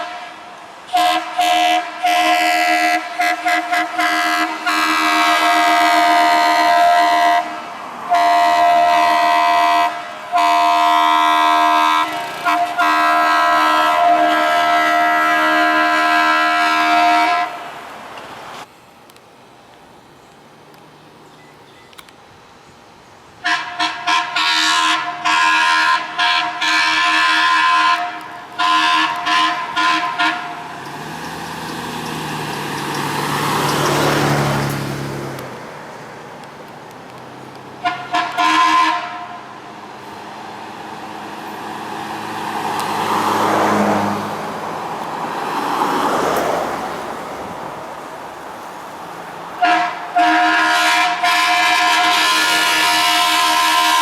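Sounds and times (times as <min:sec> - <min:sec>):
vehicle air horn honking: 0:00.0 - 0:17.7, 0:23.4 - 0:30.7, 0:37.8 - 0:39.5, 0:49.6 - 0:54.0
passing traffic: 0:00.0 - 0:54.0.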